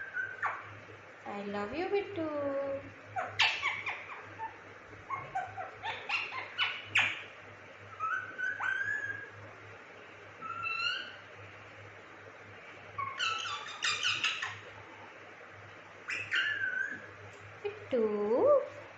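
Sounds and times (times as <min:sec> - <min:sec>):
parrot whistles gliding in pitch: 0:00.0 - 0:00.7, 0:07.9 - 0:09.4, 0:10.4 - 0:11.2, 0:16.1 - 0:17.1
parrot screeching: 0:03.1 - 0:07.3, 0:08.0 - 0:09.4, 0:10.4 - 0:11.2, 0:13.0 - 0:14.6, 0:16.1 - 0:17.1.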